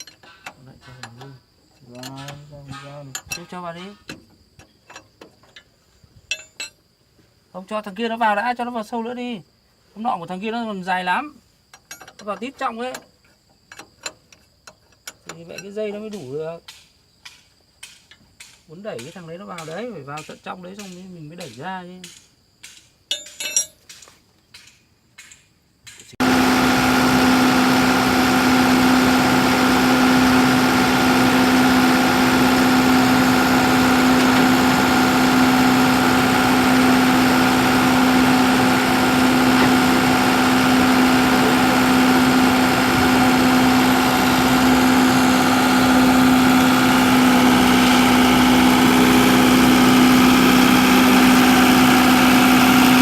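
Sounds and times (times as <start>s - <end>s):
construction machine engine running: 26.2s - 53.0s.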